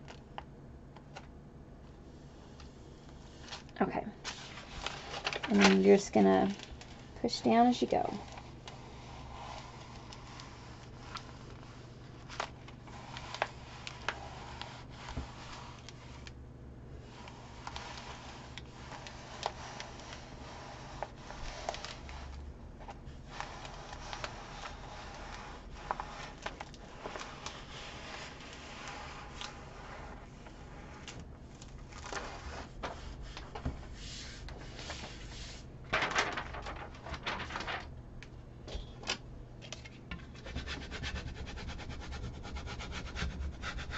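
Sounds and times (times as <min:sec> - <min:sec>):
decal rubbed onto tile: 0:17.0 - 0:22.3, 0:23.2 - 0:31.0.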